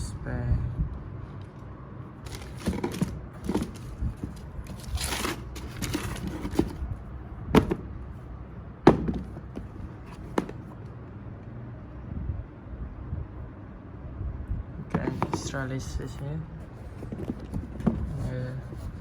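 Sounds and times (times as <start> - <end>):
box rustling: 2.2 - 6.9, 9.0 - 10.8, 15.0 - 15.6, 16.6 - 19.0.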